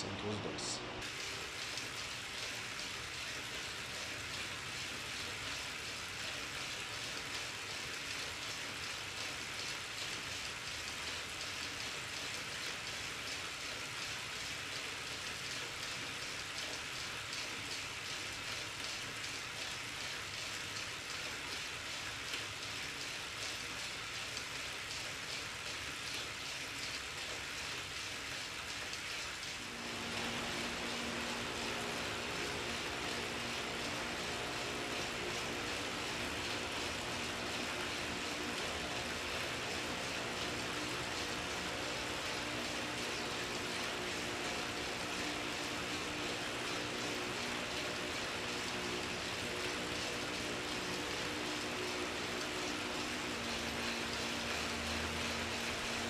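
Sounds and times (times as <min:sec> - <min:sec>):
bike trainer whirring hiss: 0:01.0 - 0:19.7, 0:29.5 - 0:56.0
low steady hum: 0:29.5 - 0:56.0.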